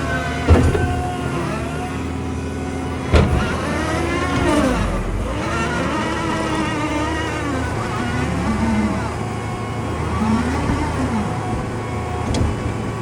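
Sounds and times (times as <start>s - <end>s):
diesel engine under load: 0.0s - 13.0s
sharp clunks: 0.4s - 1.2s, 3.1s - 4.9s.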